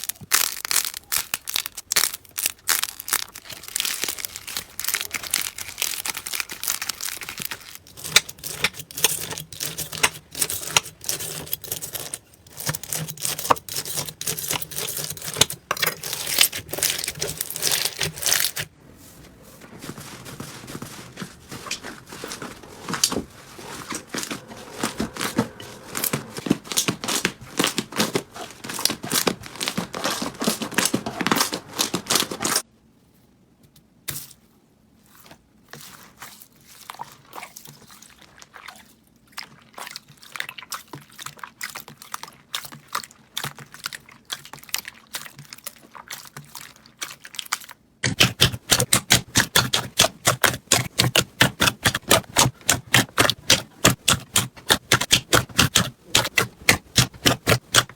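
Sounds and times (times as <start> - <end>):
crunchy slime crackling and popping: 0.0 - 9.2, 48.0 - 57.9.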